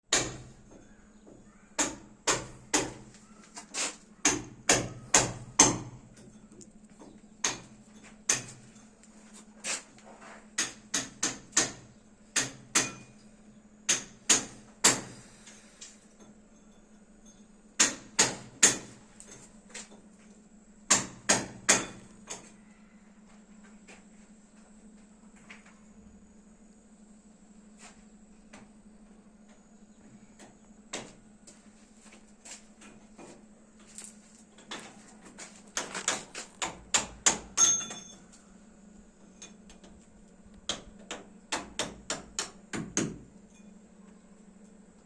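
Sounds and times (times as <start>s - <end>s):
hammer strikes: 0.1s - 0.5s, 1.8s - 3.1s
steady low hum: 0.1s - 45.0s.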